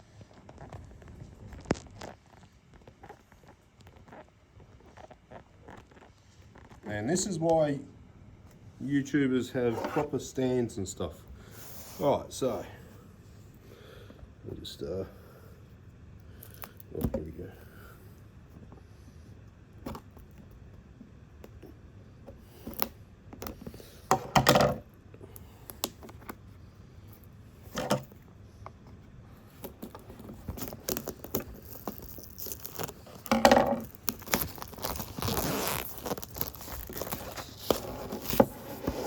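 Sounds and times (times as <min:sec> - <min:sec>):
packaging rustling and tearing: 0:29.4 - 0:39.0.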